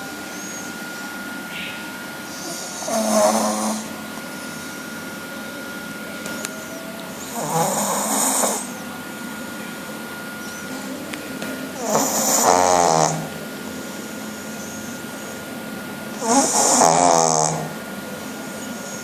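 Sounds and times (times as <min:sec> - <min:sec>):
dog breathing: 0:02.3 - 0:04.0, 0:07.2 - 0:08.8, 0:11.8 - 0:13.4, 0:16.2 - 0:17.8
dog snoring: 0:02.3 - 0:04.0, 0:07.2 - 0:08.8, 0:11.8 - 0:13.4, 0:16.1 - 0:17.8.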